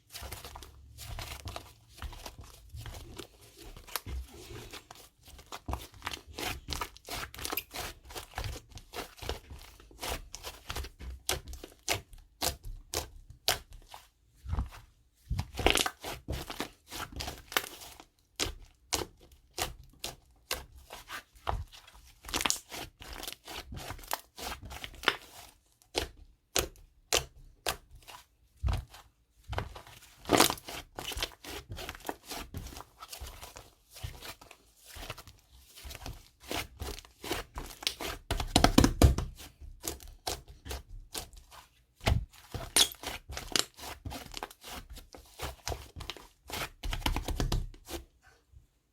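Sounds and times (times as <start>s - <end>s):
wet slime squishes: 0.0s - 48.1s
slime crackling and popping: 22.3s - 24.2s.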